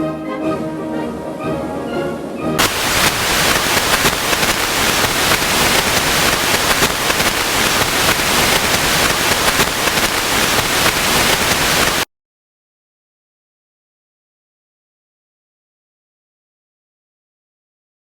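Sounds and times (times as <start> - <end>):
crackling static hiss: 2.6 - 12.1.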